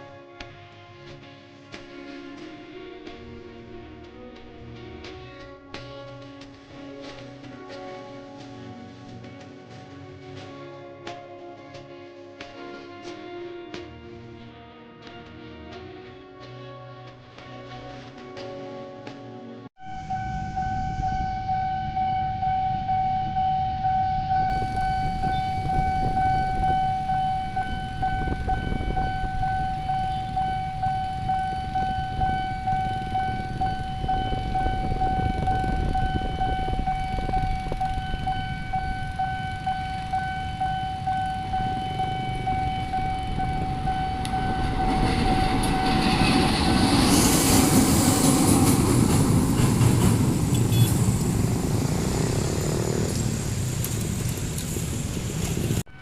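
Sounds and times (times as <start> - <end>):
level crossing warning tone: 19.8 - 47.2, 48.0 - 52.0
low rumble of traffic: 19.8 - 55.9
train passing with clatter: 19.9 - 56.0.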